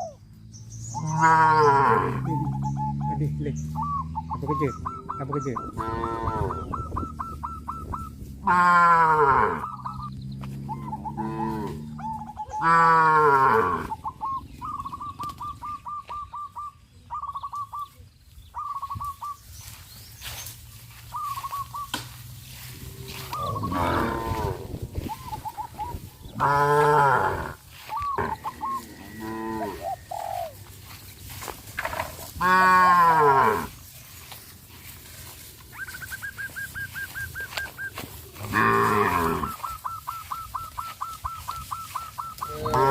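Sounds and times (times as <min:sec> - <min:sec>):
cattle mooing: 0:01.0 - 0:03.3, 0:05.6 - 0:06.7, 0:08.4 - 0:14.0, 0:22.8 - 0:25.0, 0:26.3 - 0:30.2, 0:31.9 - 0:33.8, 0:38.3 - 0:39.8, 0:42.2 - 0:42.9.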